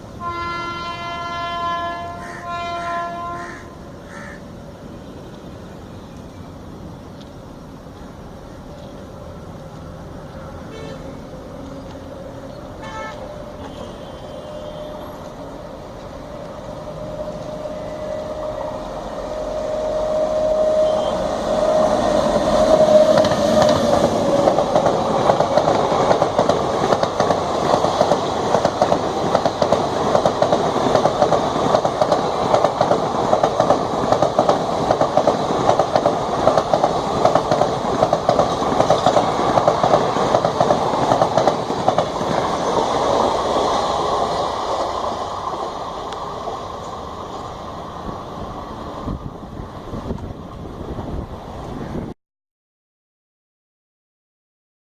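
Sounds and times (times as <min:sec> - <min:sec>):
electric locomotive tone: 0:00.0 - 0:52.0
train wheel clatter: 0:21.0 - 0:47.5.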